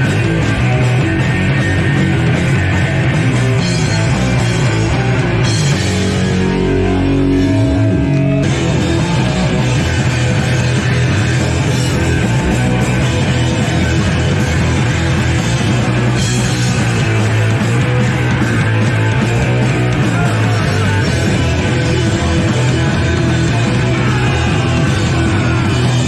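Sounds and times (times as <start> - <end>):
punk rock band playing live: 0.0 - 26.0.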